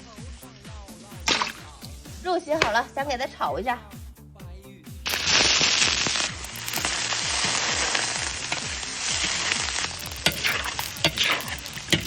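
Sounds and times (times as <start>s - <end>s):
pork sizzling in hot oil: 1.2s - 1.7s, 5.1s - 12.0s
sharp clicks: 5.1s - 5.5s, 6.4s - 7.1s, 9.8s - 12.0s.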